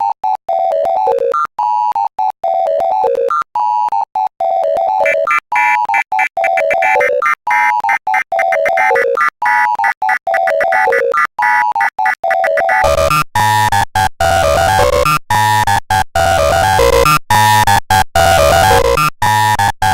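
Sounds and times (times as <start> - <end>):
beeping synth alert melody: 5.0 - 7.1, 12.2 - 13.6, 18.2 - 19.9
distorted bass-heavy layer: 12.6 - 19.9.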